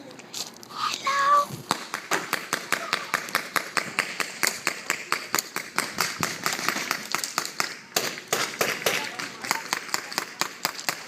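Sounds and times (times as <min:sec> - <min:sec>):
paintball markers firing: 0:01.7 - 0:11.0.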